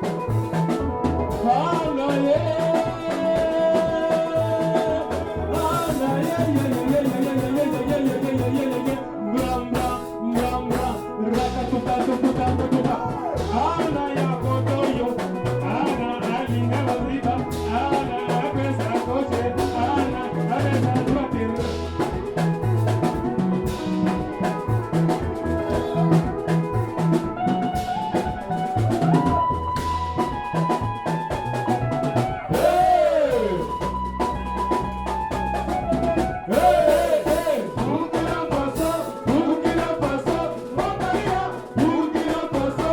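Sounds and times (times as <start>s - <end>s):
bass: 0.0s - 42.9s
person singing: 1.3s - 22.4s, 32.4s - 34.2s, 36.0s - 42.9s
dance music drum beat: 36.5s - 42.9s.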